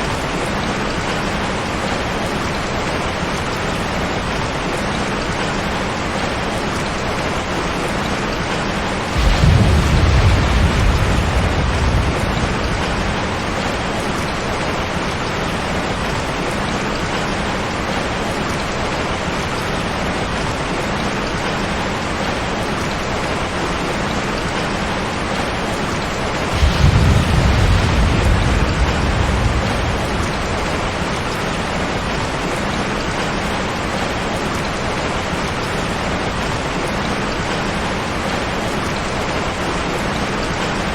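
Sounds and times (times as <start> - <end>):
heavy rain on a tin roof: 0.0 - 40.9
thunder rumbling: 8.8 - 17.2, 25.2 - 34.6.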